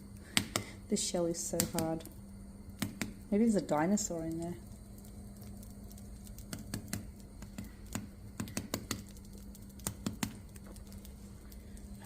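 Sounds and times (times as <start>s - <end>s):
egg shell tapping and cracking: 0.2s - 0.7s, 2.7s - 3.2s, 4.2s - 12.0s.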